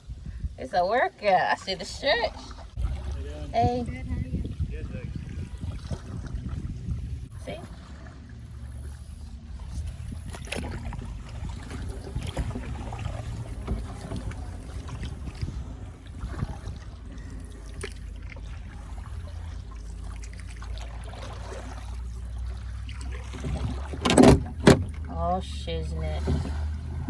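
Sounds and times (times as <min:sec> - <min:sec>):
wind on microphone: 0:00.0 - 0:19.7
paddles splashing in water: 0:01.1 - 0:27.0.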